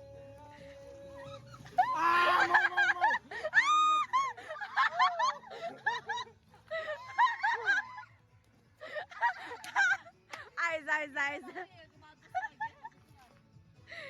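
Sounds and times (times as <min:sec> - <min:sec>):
high-pitched laughter and squeals: 0:01.2 - 0:08.1.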